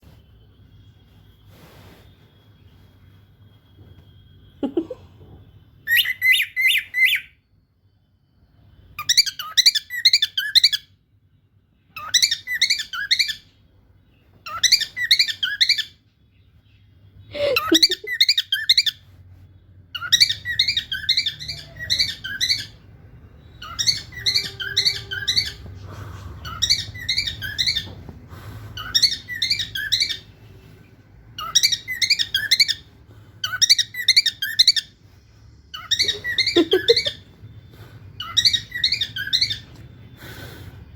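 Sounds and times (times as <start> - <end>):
cockatiel chirping: 5.9 - 7.4, 9.0 - 10.9, 12.0 - 13.6, 14.4 - 16.0, 17.4 - 19.0, 20.0 - 25.8, 26.4 - 28.1, 28.8 - 30.3, 31.4 - 35.0, 35.7 - 39.9.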